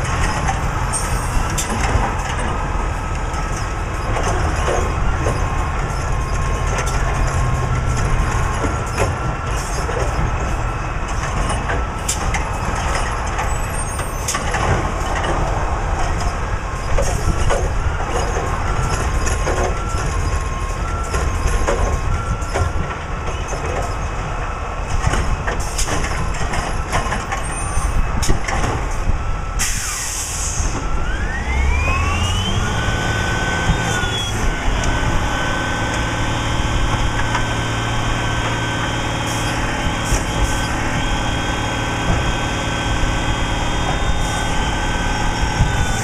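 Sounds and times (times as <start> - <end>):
garbage truck diesel engine: 0.0 - 46.0
air brake hiss: 29.6 - 30.8.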